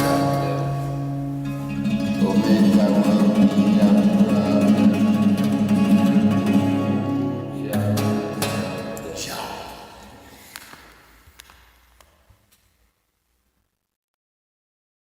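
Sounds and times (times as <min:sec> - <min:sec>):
plucked string instrument music: 0:00.0 - 0:09.2.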